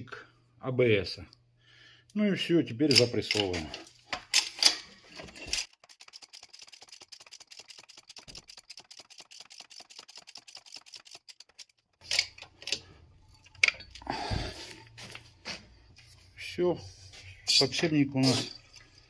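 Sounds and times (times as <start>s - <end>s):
fast mechanical ticking of press: 5.6s - 12.8s.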